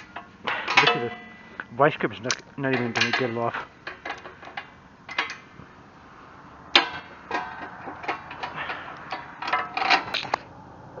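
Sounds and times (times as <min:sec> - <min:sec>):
sharp metallic clank: 0:00.1 - 0:01.5, 0:02.3 - 0:05.5.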